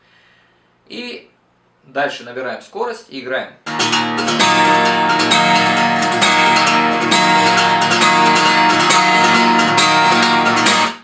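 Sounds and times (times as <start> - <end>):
guitar strumming: 3.6 - 11.0.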